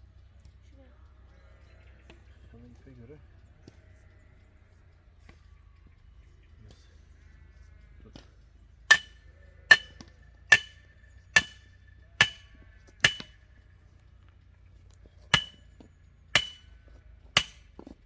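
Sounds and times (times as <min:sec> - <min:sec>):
hammer on metal: 0:08.9 - 0:13.4, 0:15.3 - 0:15.6, 0:16.4 - 0:16.7, 0:17.4 - 0:17.6.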